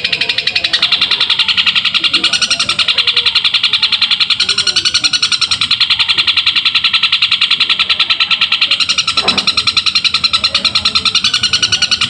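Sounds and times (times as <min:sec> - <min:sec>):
bird chattering song: 0:00.0 - 0:12.0.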